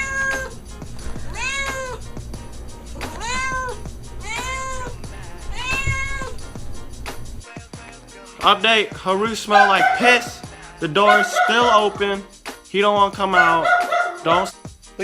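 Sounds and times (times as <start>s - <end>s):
pet meowing cries: 0.0s - 2.1s, 3.0s - 6.4s, 9.5s - 10.4s, 11.0s - 12.0s, 13.4s - 14.4s.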